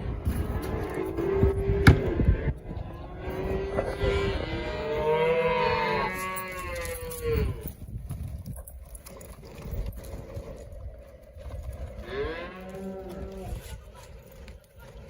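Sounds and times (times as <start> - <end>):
cattle mooing: 0.5 - 7.7, 12.0 - 13.8.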